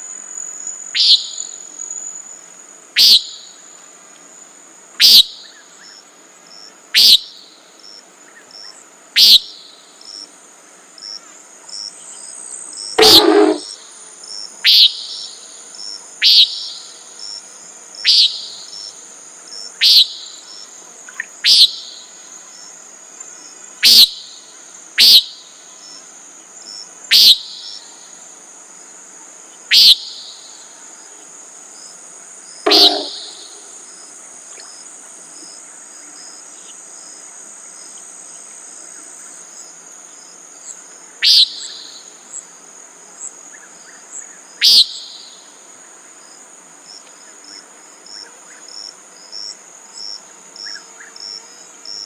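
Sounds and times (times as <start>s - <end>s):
crickets trilling: 0.0s - 52.0s
nighthawk peent call: 9.2s - 9.5s, 13.0s - 13.8s, 14.6s - 15.3s, 16.2s - 16.9s, 19.8s - 20.2s, 29.7s - 30.1s, 32.6s - 33.8s, 41.2s - 42.0s.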